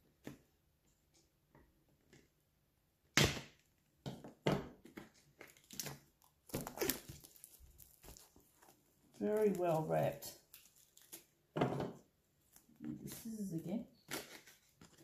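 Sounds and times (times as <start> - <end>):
plastic wrapping crinkling: 5.2 - 11.4.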